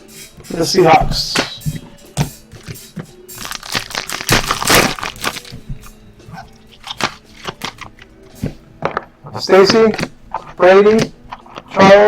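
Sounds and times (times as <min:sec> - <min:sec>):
faint background music: 0:00.0 - 0:12.0
foil wrapper crinkling: 0:03.4 - 0:05.7, 0:06.4 - 0:08.1.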